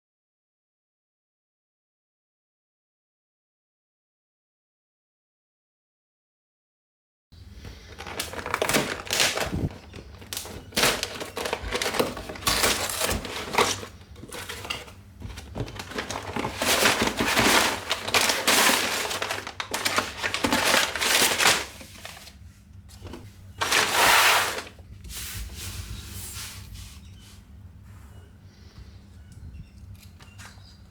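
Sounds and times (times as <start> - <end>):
plastic bags crinkling: 7.5 - 24.8
plastic pieces rattling: 7.8 - 22.2, 23.6 - 24.7.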